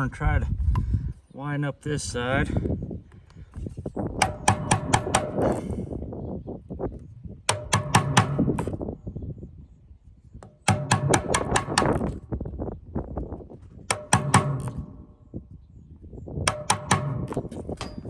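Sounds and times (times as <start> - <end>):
mallet tapping metal punch: 4.2 - 5.8, 7.5 - 8.8, 10.4 - 12.2, 13.9 - 15.2, 16.5 - 18.0.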